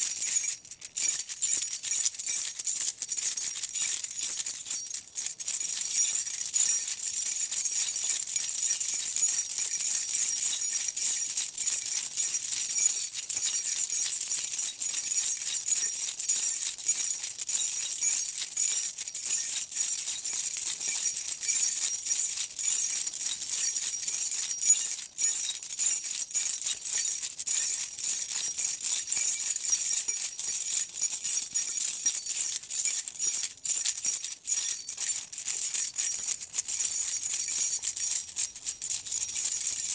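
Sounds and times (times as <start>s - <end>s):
metal keys jangling: 0.0s - 13.8s, 26.2s - 39.9s.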